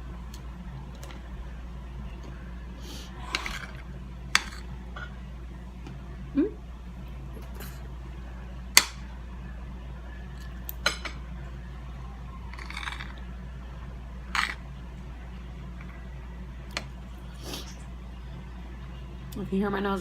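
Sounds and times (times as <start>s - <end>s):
low hum: 0.0s - 20.0s
utensil clinking on a plate: 10.4s - 11.2s.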